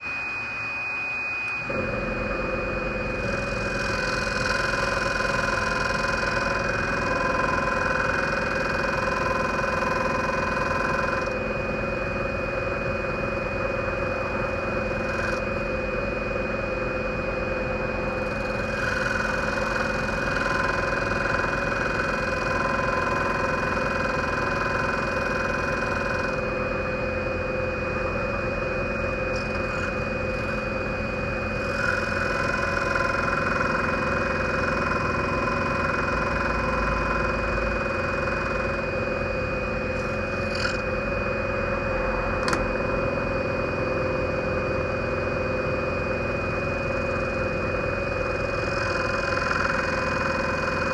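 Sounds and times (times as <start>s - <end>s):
scroll saw cutting wood: 40.0s - 40.8s.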